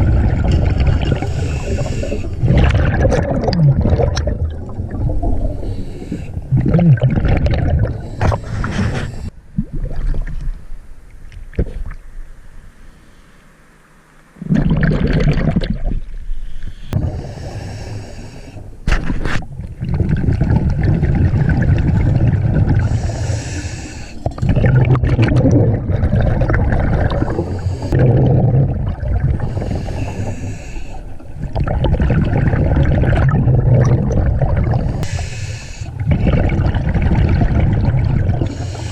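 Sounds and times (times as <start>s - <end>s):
gurgling exhaled bubbles: 0.0s - 10.4s, 14.4s - 16.1s, 19.5s - 23.4s, 24.2s - 35.1s, 35.9s - 38.9s
diver breathing through regulator: 1.2s - 2.5s, 5.3s - 6.5s, 7.9s - 9.4s, 16.4s - 18.7s, 22.8s - 24.3s, 27.1s - 28.0s, 29.4s - 31.2s, 34.7s - 36.5s, 38.4s - 38.9s.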